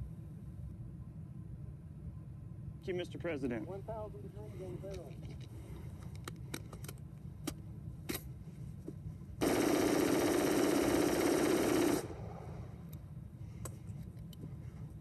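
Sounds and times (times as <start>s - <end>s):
rapid gunfire: 9.4s - 12.4s.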